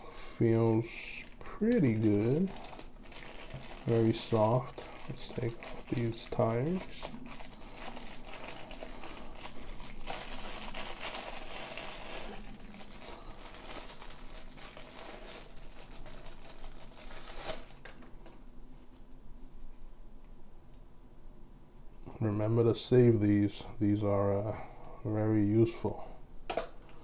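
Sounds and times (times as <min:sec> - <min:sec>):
thin plastic crinkling: 0:00.0 - 0:19.2.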